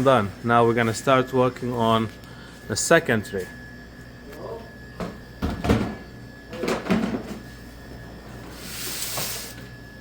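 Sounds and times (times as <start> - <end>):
tray sliding on runners: 8.5 - 9.6.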